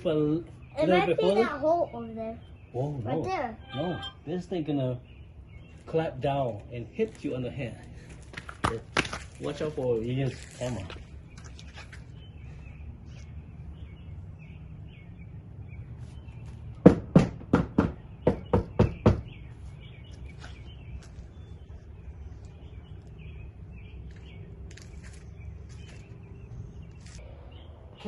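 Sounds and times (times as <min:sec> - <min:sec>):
birds chirping faintly: 0:00.0 - 0:28.0
sharp knocks: 0:16.8 - 0:19.4
low outdoor rumble: 0:19.4 - 0:28.0.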